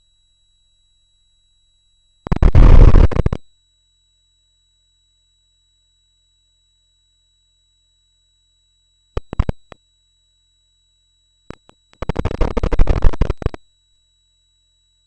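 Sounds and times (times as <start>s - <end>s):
rapid clicks: 9.2s - 9.8s, 12.0s - 13.6s
sharp clicks: 9.2s - 9.8s, 12.0s - 13.6s.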